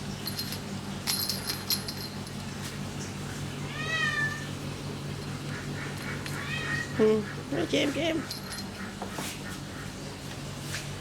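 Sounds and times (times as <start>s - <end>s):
steady low hum: 0.0s - 11.0s
cat meowing: 3.6s - 4.6s, 6.3s - 7.2s.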